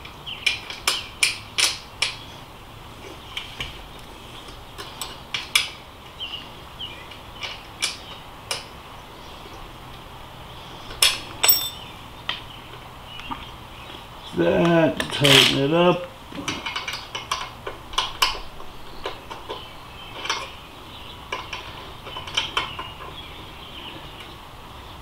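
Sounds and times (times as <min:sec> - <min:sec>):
metal tools clicking and clinking: 0:11.4 - 0:11.9
ringing metal taps: 0:11.4 - 0:11.9.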